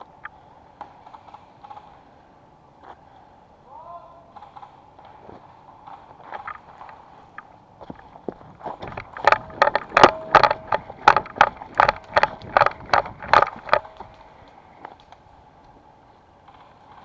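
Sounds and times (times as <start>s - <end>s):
running footsteps crunching: 5.2s - 15.8s.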